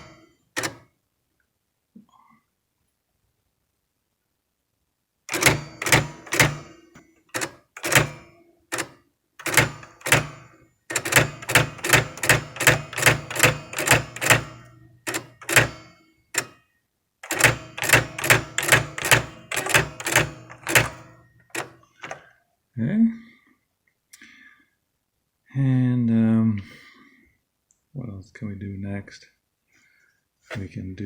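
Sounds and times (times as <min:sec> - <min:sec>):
electronic typewriter printing: 0:00.0 - 0:00.8, 0:05.3 - 0:16.6, 0:17.2 - 0:22.2.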